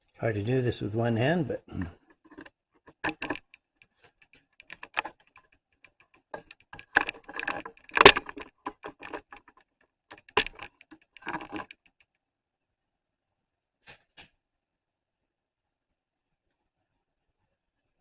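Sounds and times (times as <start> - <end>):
small plastic clicks and taps: 2.2 - 11.8.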